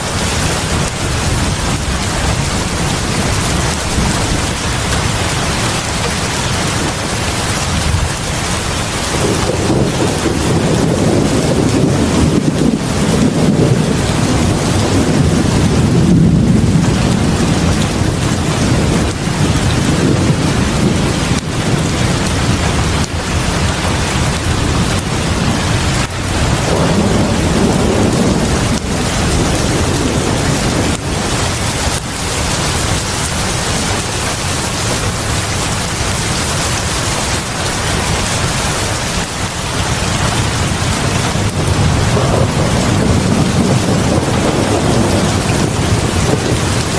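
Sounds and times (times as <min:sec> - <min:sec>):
heavy rain on a porch: 0:00.0 - 0:46.9
low rumble: 0:00.2 - 0:36.2.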